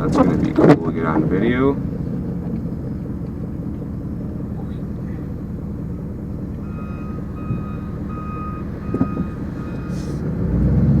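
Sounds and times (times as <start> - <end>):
low engine rumble: 0.0 - 11.0
reversing alarm beeping: 6.5 - 10.2
short clunk: 8.9 - 10.1.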